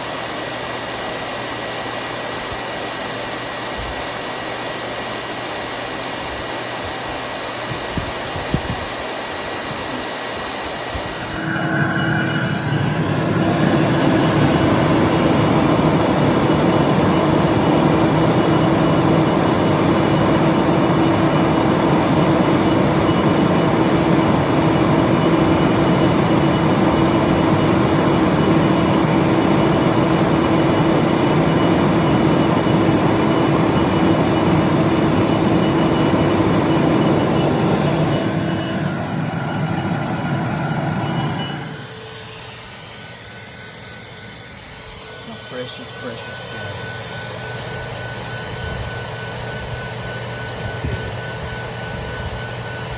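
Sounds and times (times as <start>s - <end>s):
vacuum cleaner running: 0.0s - 52.9s.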